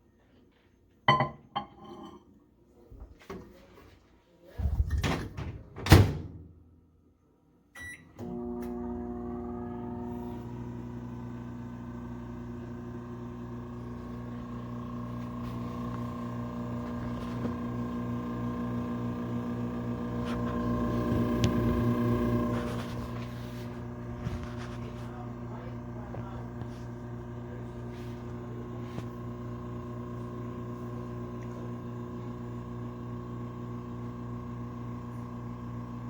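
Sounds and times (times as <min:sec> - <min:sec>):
microwave beep: 0:07.8 - 0:08.2
microwave oven humming: 0:07.8 - 0:36.0.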